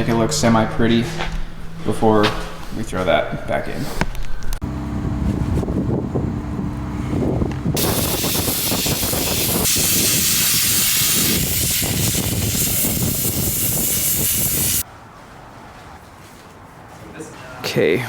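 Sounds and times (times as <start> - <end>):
pressurised spray hissing: 7.8 - 14.8.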